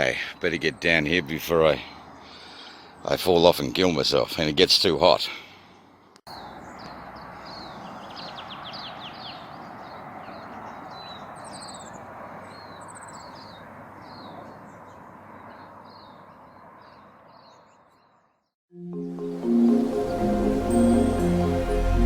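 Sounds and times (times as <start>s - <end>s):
small birds chirping: 5.6s - 18.6s.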